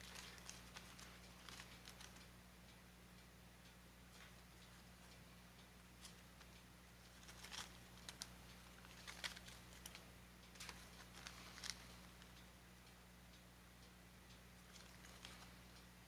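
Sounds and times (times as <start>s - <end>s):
light handling clicks and rustles: 0.0s - 2.3s, 6.0s - 12.4s, 14.6s - 15.9s
low electrical hum: 0.0s - 16.0s.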